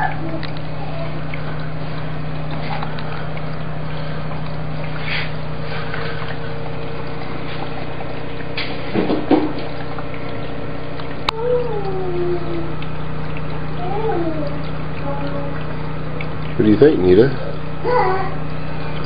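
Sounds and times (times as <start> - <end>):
liquid-cooling pump humming: 0.0 - 19.0
water pouring: 0.0 - 19.0.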